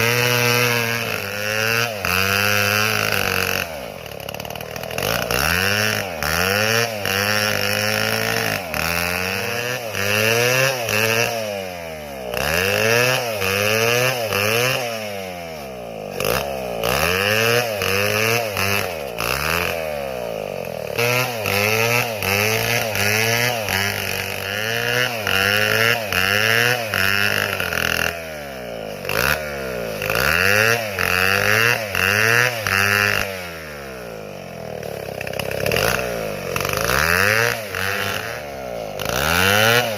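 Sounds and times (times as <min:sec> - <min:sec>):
chainsaw cutting through tree: 0:00.0 - 0:39.9.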